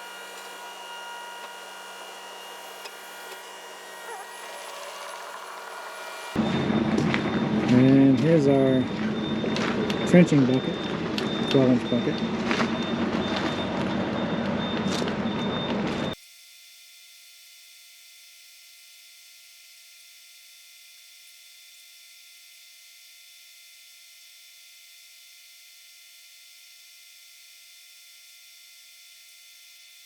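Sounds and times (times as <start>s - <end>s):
thin high tones: 0.0s - 6.4s.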